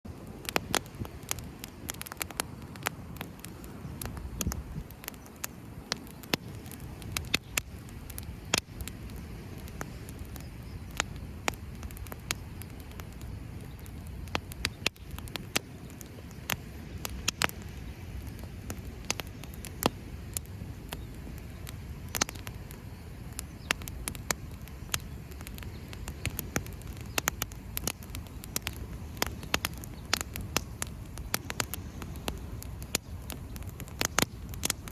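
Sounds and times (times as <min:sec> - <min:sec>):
campfire crackling and popping: 0:00.1 - 0:34.9.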